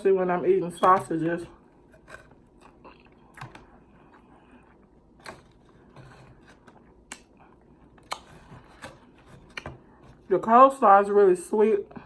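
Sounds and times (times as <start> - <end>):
chewing and mouth sounds: 2.5 - 5.3, 6.6 - 8.5.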